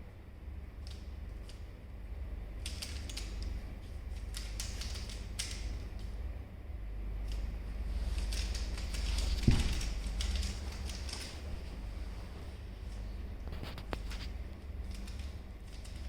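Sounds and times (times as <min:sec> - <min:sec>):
steady low hum: 0:00.0 - 0:16.0
puzzle cube clicking turns: 0:02.6 - 0:03.5, 0:04.1 - 0:05.7.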